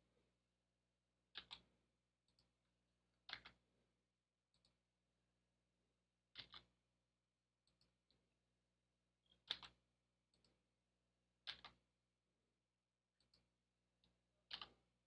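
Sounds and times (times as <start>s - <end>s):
computer keyboard and mouse clicks: 1.3s - 1.7s, 3.3s - 3.6s, 6.3s - 6.7s, 9.3s - 10.6s, 11.4s - 11.8s, 14.5s - 14.8s.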